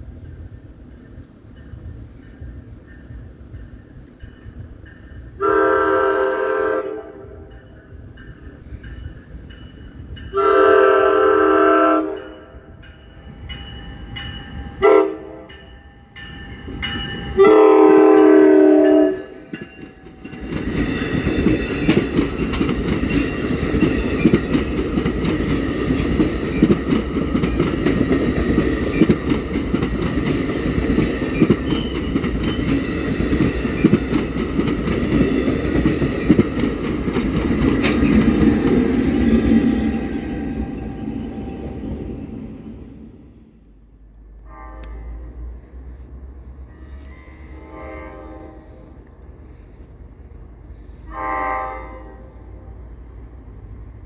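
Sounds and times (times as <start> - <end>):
train passing rumble: 0.0 - 54.0
train horn blasts: 5.4 - 7.5, 10.3 - 12.7, 14.8 - 15.5, 17.4 - 19.4, 44.4 - 45.5, 46.9 - 49.0, 51.0 - 52.8
wheels clattering over rail joints: 19.4 - 40.0.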